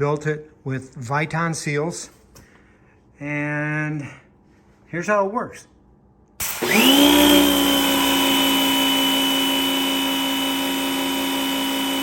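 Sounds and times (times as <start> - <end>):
pressure washer motor whine: 6.4 - 12.0.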